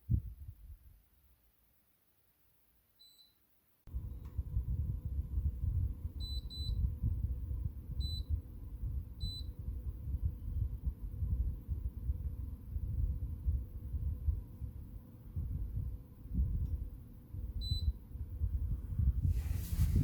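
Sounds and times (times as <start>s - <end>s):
air conditioner beeping: 3.0s - 10.0s, 16.0s - 18.4s
low rumbling noise with hum: 3.9s - 20.0s.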